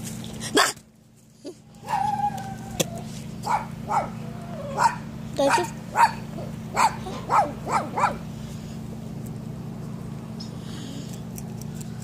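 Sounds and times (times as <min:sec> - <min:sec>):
low hum: 0:00.0 - 0:12.0
dog barking: 0:03.4 - 0:08.2.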